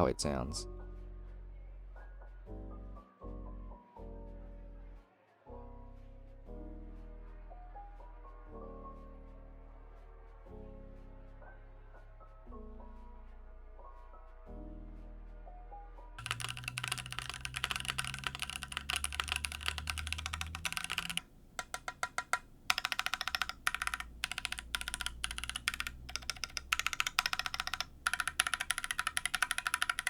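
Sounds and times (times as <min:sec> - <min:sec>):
mechanical keyboard typing: 0:16.2 - 0:30.0.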